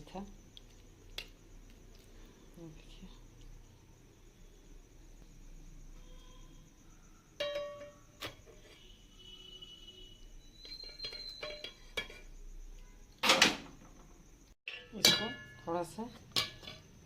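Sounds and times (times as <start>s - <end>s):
utensils clattering: 10.6s - 12.3s, 14.7s - 15.6s
metal utensils knocking on a vessel: 14.7s - 15.7s.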